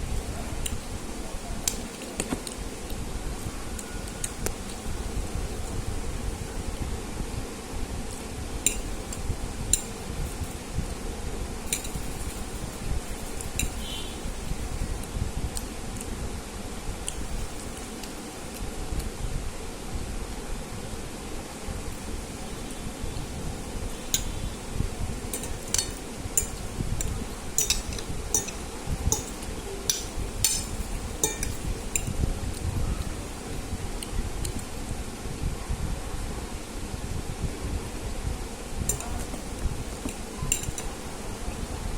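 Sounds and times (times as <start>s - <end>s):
low fan hum: 0.0s - 41.9s
utensil clinking on dishware: 25.3s - 32.1s, 38.9s - 39.3s.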